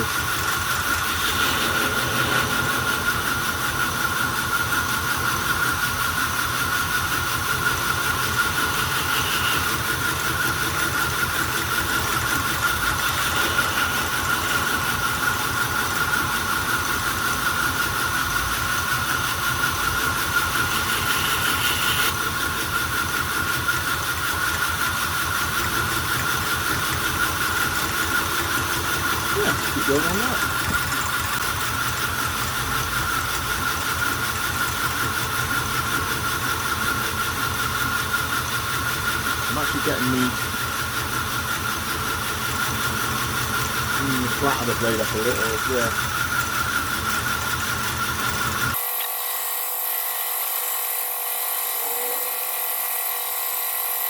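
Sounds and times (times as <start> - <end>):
belt grinder whining: 0.0 - 54.0
blade grinding hiss: 0.5 - 6.0, 8.3 - 10.2.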